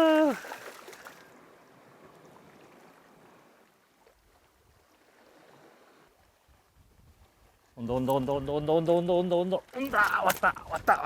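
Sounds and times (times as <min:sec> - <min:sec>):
wind rumble on microphone: 0:06.2 - 0:08.8.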